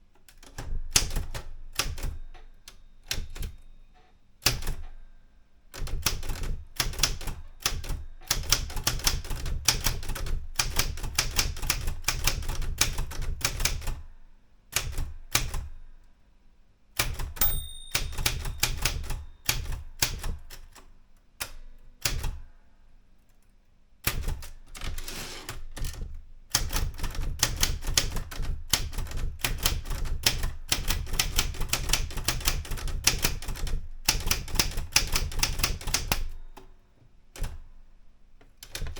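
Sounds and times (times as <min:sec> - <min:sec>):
manual typewriter key strikes: 0:00.2 - 0:03.6, 0:04.4 - 0:05.0, 0:05.8 - 0:14.0, 0:14.8 - 0:15.7, 0:17.0 - 0:20.8, 0:24.0 - 0:36.7, 0:38.6 - 0:38.9
typewriter carriage bell ring: 0:17.4 - 0:19.7.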